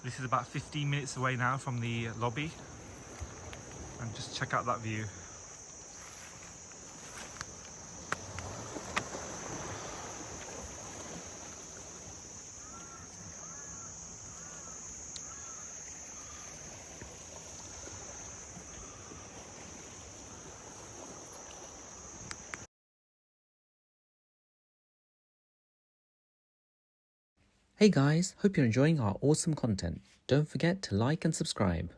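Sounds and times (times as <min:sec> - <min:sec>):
bird calling: 0:00.0 - 0:22.6
insects droning: 0:00.0 - 0:22.7.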